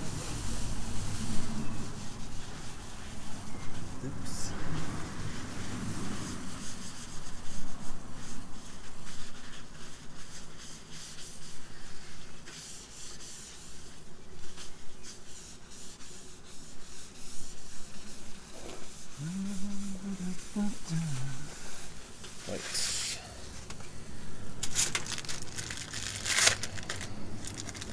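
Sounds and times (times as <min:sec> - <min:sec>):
hand sanding bodywork: 0:04.7 - 0:23.0.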